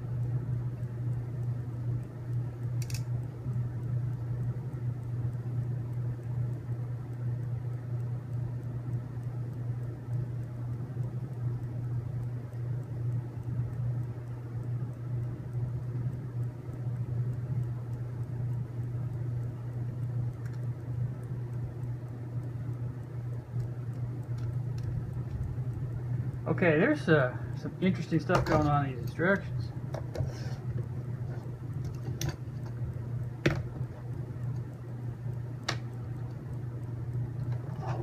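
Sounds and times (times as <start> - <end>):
low machine hum: 0.0 - 38.0
faint clicks: 4.4 - 26.4.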